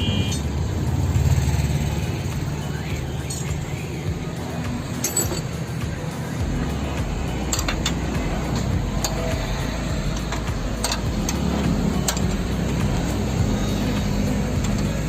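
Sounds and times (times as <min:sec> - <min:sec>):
low engine-like drone: 0:00.0 - 0:15.0
metal tool knocks and clinks: 0:04.9 - 0:05.6.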